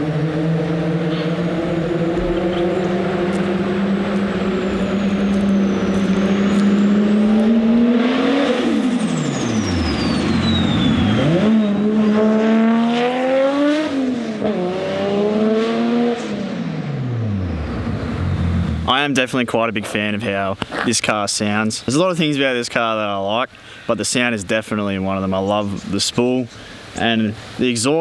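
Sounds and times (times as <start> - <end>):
high turbo whistle: 0.0 - 12.4
car engine accelerating hard: 0.0 - 19.1.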